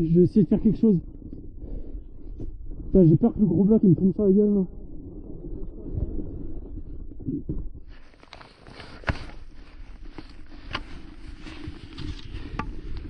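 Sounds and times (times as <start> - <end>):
wind rumble on microphone: 0.0 - 13.0
crunching and scraping in snow: 7.8 - 13.0.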